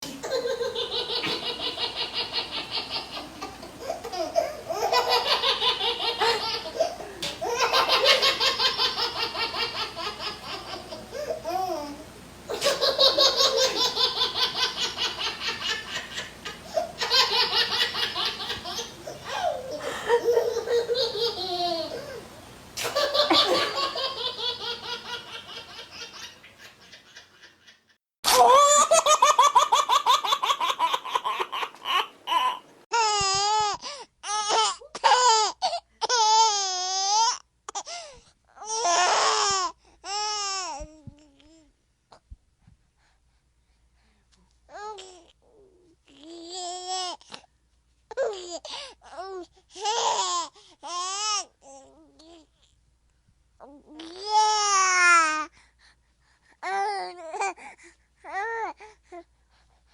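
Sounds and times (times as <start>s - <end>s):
small child laughing: 0.1s - 32.6s.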